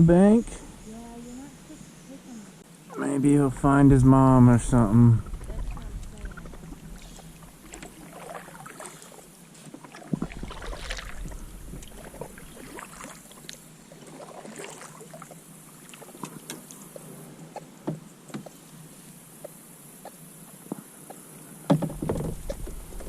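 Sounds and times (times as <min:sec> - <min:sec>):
paddle strokes splashing water: 0:05.2 - 0:23.0
knocks and taps on hull: 0:19.4 - 0:23.0.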